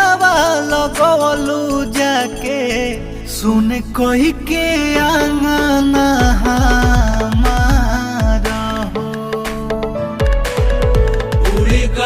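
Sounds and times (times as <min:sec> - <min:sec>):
folk-pop song with sliding bass: 0:00.0 - 0:12.0.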